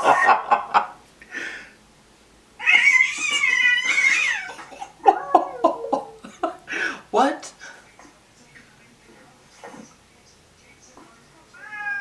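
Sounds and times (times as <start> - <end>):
cat meowing: 2.6 - 6.2, 11.5 - 12.0.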